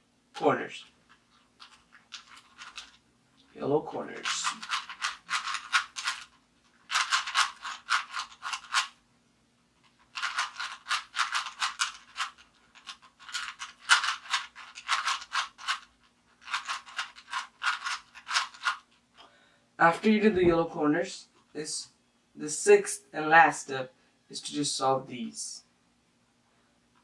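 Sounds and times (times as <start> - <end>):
puzzle cube layers clacking: 1.1 - 3.0, 4.1 - 9.0, 9.9 - 18.9.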